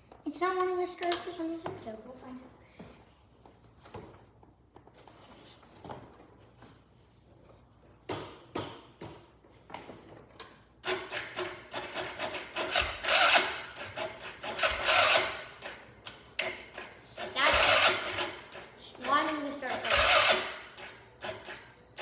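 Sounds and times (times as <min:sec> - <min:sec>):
electric starter cranking engine: 0:10.8 - 0:22.0.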